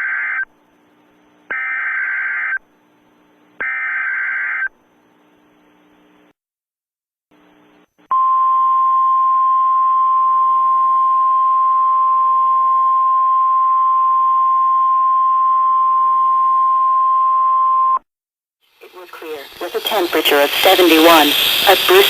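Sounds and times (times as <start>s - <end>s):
faint radio hiss: 4.9s - 6.3s, 18.7s - 22.0s
loud steady warning beep: 19.6s - 22.0s.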